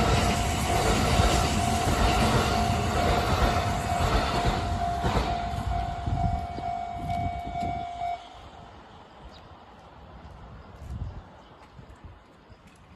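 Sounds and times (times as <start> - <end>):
level crossing warning bell: 0.0 - 8.2
train passing: 0.0 - 11.4.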